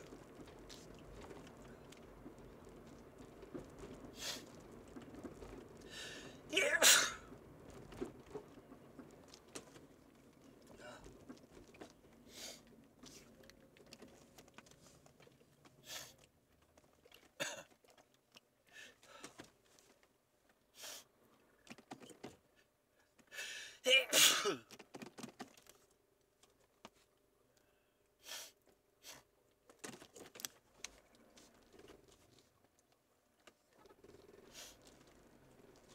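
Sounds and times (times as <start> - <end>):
person sneezing: 6.5 - 7.3, 23.9 - 24.6.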